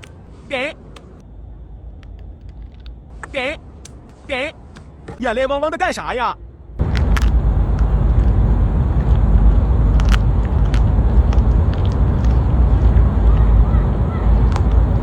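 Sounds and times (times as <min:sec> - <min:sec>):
loud low rumbling: 0:06.6 - 0:15.0.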